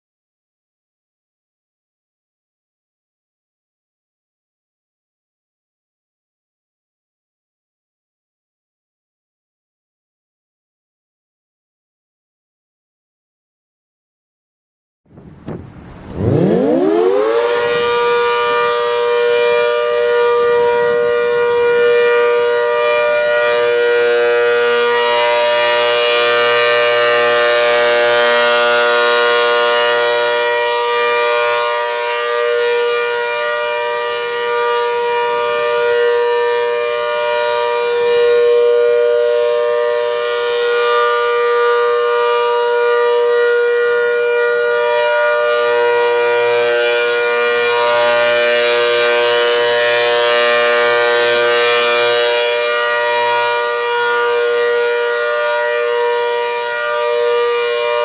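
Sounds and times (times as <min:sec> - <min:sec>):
outdoor warning siren: 0:15.1 - 0:58.0.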